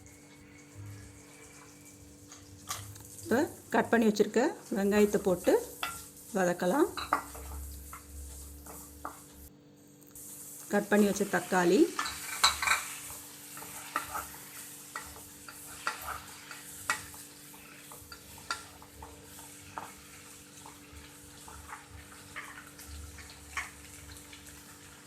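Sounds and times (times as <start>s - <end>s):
onions and tomatoes sizzling: 0.0s - 25.0s
spoon scraping and tapping pan: 5.7s - 6.1s, 6.9s - 9.4s, 11.9s - 24.2s.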